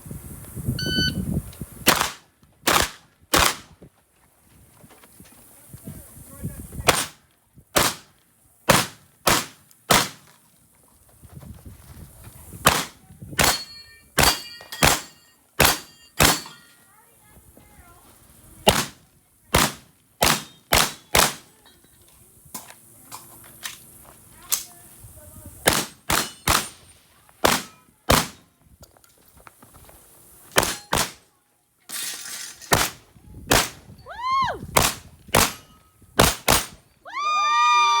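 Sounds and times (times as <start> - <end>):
shotgun shots: 1.9 - 3.7, 6.9 - 7.2, 7.8 - 8.1, 8.7 - 10.3, 12.6 - 16.6, 18.6 - 19.0, 19.6 - 21.5, 25.6 - 28.4, 30.5 - 31.3, 32.7 - 33.8, 34.8 - 36.8.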